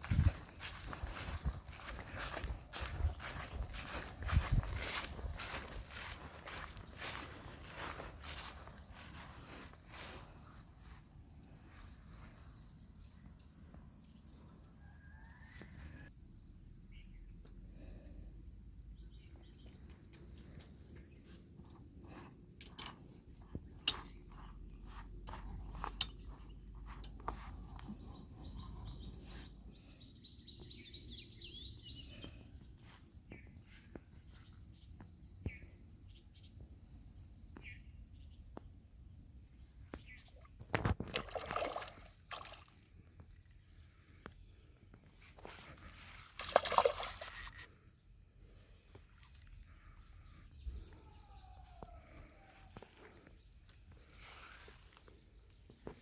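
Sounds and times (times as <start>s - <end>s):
high-pitched insect chorus: 0.0s - 19.4s, 21.2s - 31.0s.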